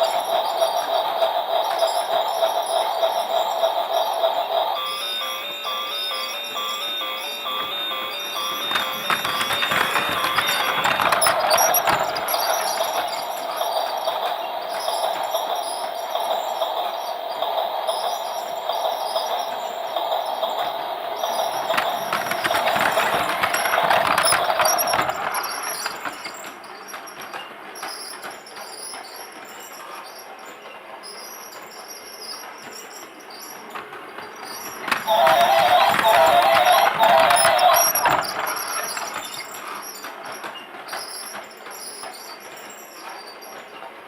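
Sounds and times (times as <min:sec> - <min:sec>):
toy train motor whine: 0:00.0 - 0:26.5, 0:34.4 - 0:40.0
fast crackling rattle: 0:08.1 - 0:26.5, 0:34.3 - 0:39.8.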